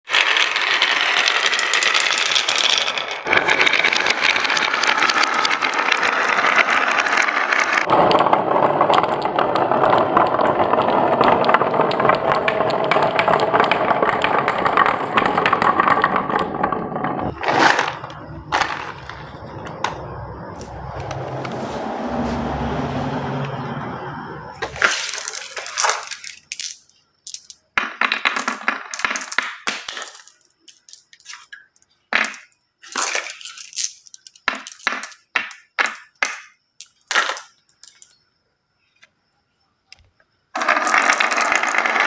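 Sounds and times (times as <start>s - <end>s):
marbles rolling on wooden run: 0.0s - 39.1s, 39.9s - 42.0s
louder bursts of clatter: 0.1s - 20.0s.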